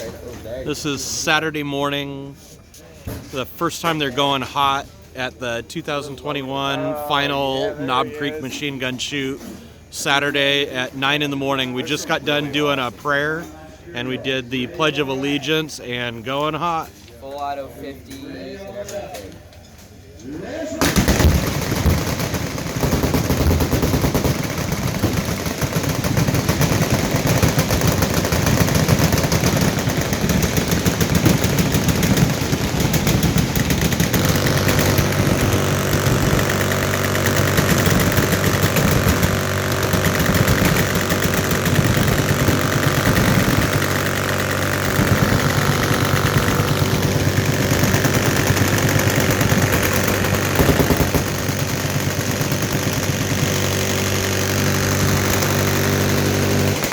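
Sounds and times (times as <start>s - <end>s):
machine guns firing full-auto: 20.8s - 56.9s
steady droning buzz: 21.0s - 56.9s.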